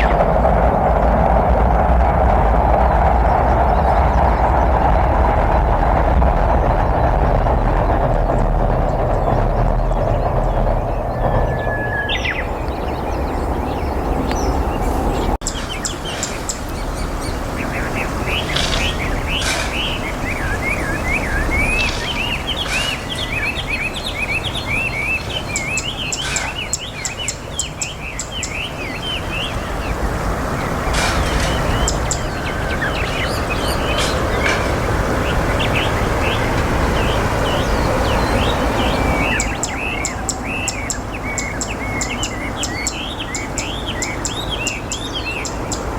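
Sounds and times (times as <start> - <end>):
low background rumble: 0.0 - 45.9
bird chirping sharp ticks: 9.1 - 14.6, 18.4 - 29.6, 30.8 - 34.8, 35.6 - 45.9.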